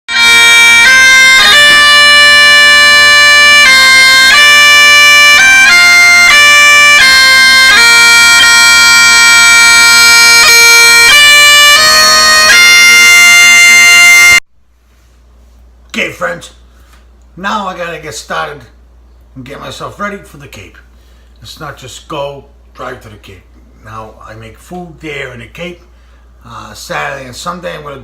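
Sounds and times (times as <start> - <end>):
bagpipe music: 0.1 - 14.4.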